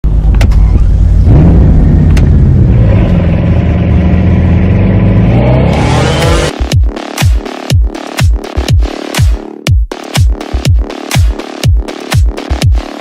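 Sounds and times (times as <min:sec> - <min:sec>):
car engine revving: 0:00.0 - 0:08.6.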